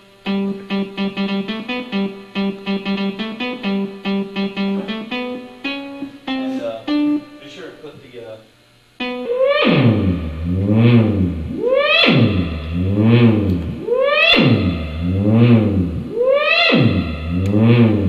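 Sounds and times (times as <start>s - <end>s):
warbling electronic tone: 9.0s - 18.0s.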